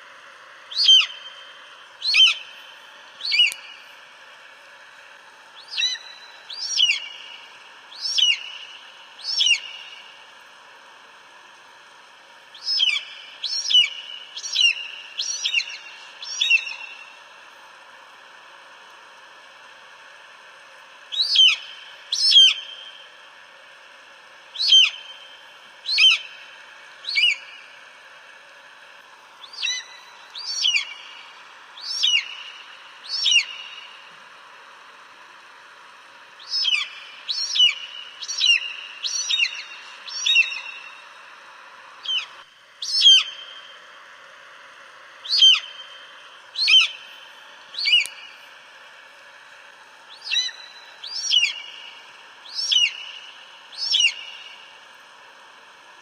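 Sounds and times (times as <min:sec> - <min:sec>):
steady background hiss: 0:00.0 - 0:56.0
eagle calling: 0:00.7 - 0:02.6, 0:03.2 - 0:03.8, 0:05.6 - 0:07.4, 0:08.0 - 0:10.0, 0:12.6 - 0:17.0, 0:21.1 - 0:22.8, 0:24.6 - 0:25.3, 0:25.9 - 0:26.4, 0:27.0 - 0:27.7, 0:29.4 - 0:34.0, 0:36.4 - 0:41.0, 0:42.0 - 0:43.6, 0:45.2 - 0:46.0, 0:46.6 - 0:47.1, 0:47.8 - 0:48.4, 0:50.1 - 0:51.9, 0:52.5 - 0:54.6.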